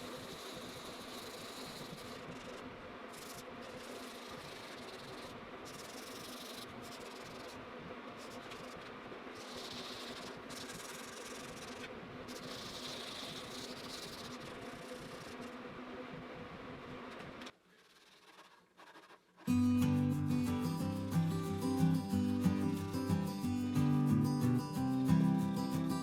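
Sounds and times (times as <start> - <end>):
pad rubbing on wood: 9.4 - 15.5.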